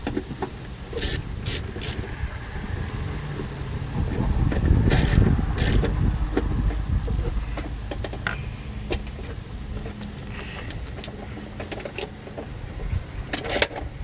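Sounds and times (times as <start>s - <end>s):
low rumble: 0.8s - 11.4s
socket ratchet clicking: 1.0s - 2.0s, 4.9s - 6.0s.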